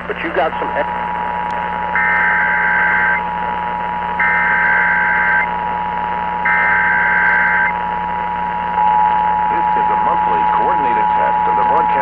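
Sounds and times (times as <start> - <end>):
screechy digital data tones: 1.9 - 3.2, 4.2 - 5.5, 6.4 - 7.8.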